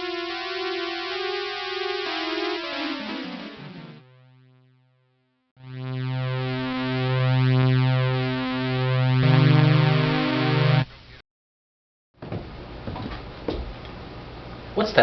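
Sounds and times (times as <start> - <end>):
synthesizer chord: 0.0 - 10.9
low synth bass line: 5.6 - 10.8.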